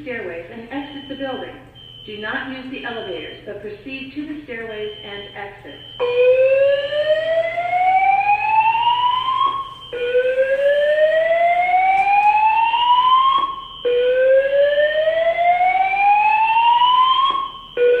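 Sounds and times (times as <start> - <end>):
fire alarm whooping tone: 0.6 - 3.5, 4.5 - 18.0.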